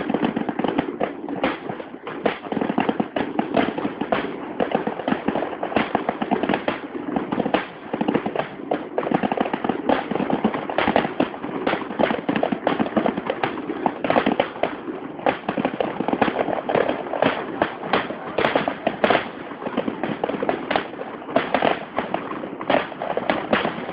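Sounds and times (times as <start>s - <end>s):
fireworks bangs and crackles: 0.0s - 23.9s.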